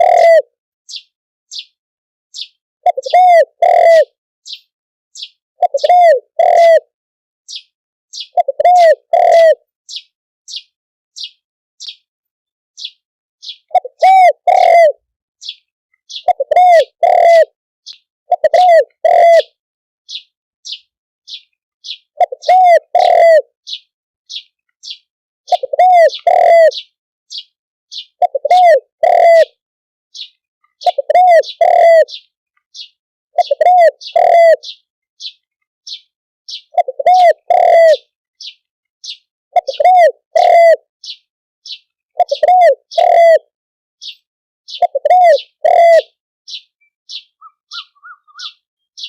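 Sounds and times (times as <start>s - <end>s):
dove cooing: 0.0s - 0.5s, 2.8s - 4.2s, 5.6s - 6.9s, 8.4s - 9.6s, 13.7s - 15.0s, 16.2s - 17.6s, 18.3s - 19.6s, 22.2s - 23.5s, 25.5s - 26.9s, 28.2s - 29.6s, 30.8s - 32.2s, 33.4s - 34.8s, 36.8s - 38.1s, 39.6s - 40.9s, 42.2s - 43.5s, 44.7s - 46.2s, 47.1s - 48.6s
small bird chirping: 0.0s - 6.8s, 7.5s - 12.1s, 12.8s - 49.0s.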